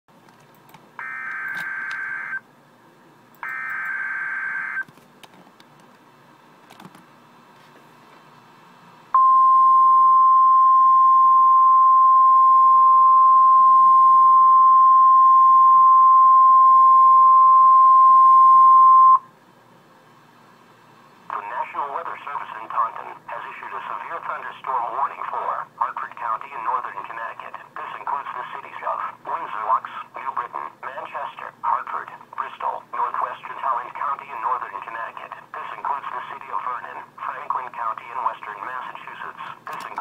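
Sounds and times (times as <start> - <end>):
steady alert tone: 1.0 - 2.4, 3.4 - 4.8.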